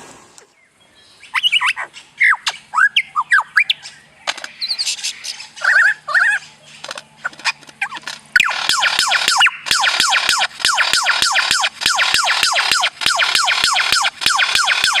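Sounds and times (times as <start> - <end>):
bird chirping and squawking: 1.2 - 15.0
sharp clicks: 4.2 - 4.6, 6.8 - 15.0.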